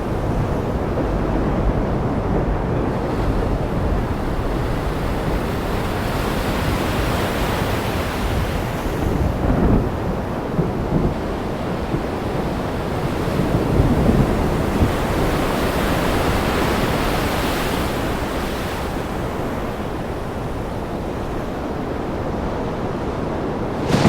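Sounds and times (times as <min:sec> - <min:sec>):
gusting wind: 0:00.0 - 0:24.0
heavy rain: 0:23.6 - 0:24.0
deep rumble: 0:23.8 - 0:24.0.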